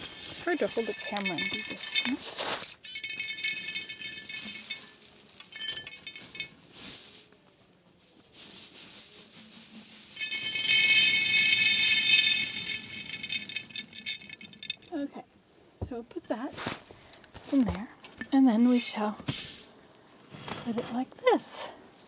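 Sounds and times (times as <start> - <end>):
seeds rattling in container: 0.0 - 7.3, 8.4 - 14.9.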